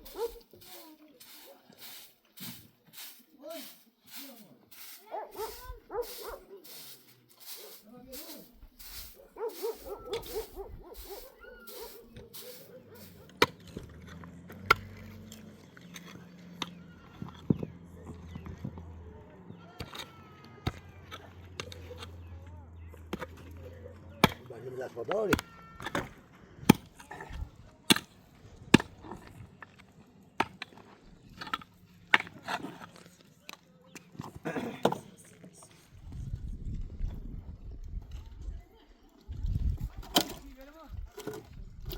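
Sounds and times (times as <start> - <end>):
dog whining and yelping: 9.4 - 13.0
axe blows chopping firewood: 24.2 - 24.5, 25.3 - 29.0.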